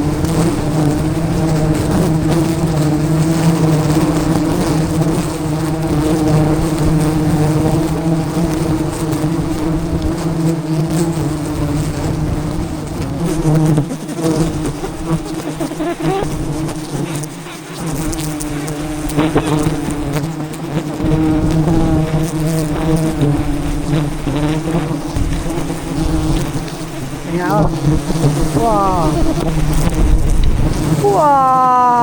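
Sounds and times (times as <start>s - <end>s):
bees buzzing: 0.0s - 32.0s
wind rumble on microphone: 25.1s - 31.2s.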